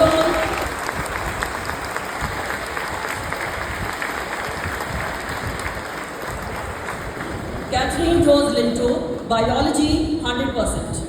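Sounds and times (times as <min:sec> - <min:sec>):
audience applauding: 0:00.0 - 0:07.7.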